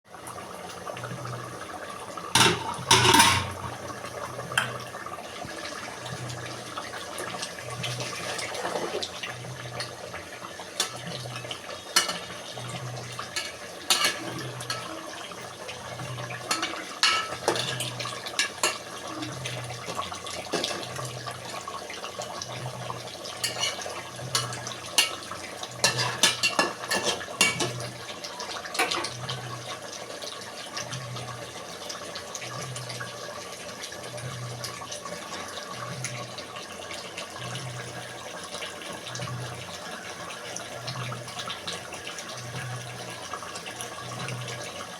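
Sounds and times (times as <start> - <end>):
metal pots and utensils clinking: 2.3 - 3.8, 4.5 - 4.9, 10.6 - 21.3, 23.2 - 28.0, 28.6 - 29.2
water splashing and trickling: 2.3 - 44.9.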